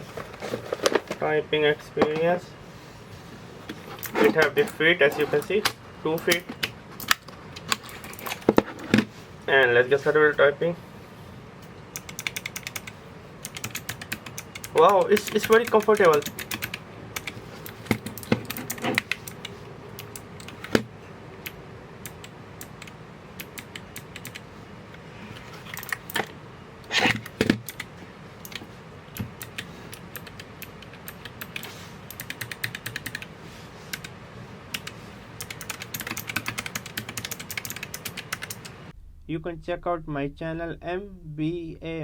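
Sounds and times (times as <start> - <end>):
mechanical keyboard typing: 11.9 - 24.5, 25.7 - 26.2, 27.1 - 28.6, 29.2 - 33.3, 33.9 - 38.8.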